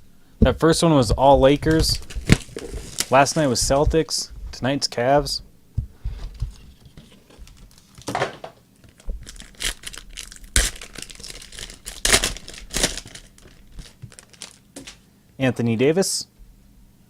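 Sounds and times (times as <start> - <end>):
wrapper crinkling and tearing: 1.7 - 3.6, 7.4 - 8.1, 8.8 - 15.0.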